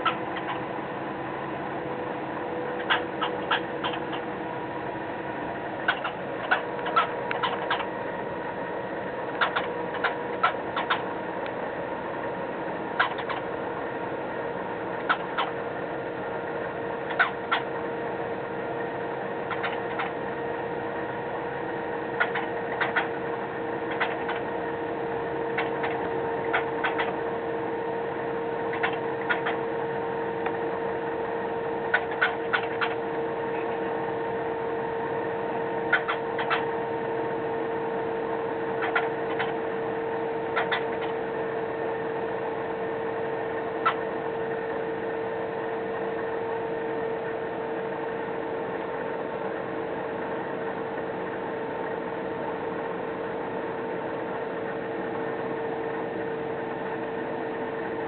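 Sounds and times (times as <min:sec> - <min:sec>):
cockatiel clicks and ticks: 0:00.0 - 0:00.6, 0:02.8 - 0:04.2, 0:05.9 - 0:07.9, 0:09.3 - 0:11.0, 0:13.0 - 0:13.4, 0:15.0 - 0:15.5, 0:19.5 - 0:20.2, 0:22.2 - 0:23.1, 0:23.9 - 0:24.4, 0:25.6 - 0:27.2, 0:28.7 - 0:29.6, 0:31.9 - 0:33.0, 0:35.9 - 0:36.6, 0:38.8 - 0:39.6, 0:40.6 - 0:41.1
electrical hum: 0:00.0 - 0:58.0.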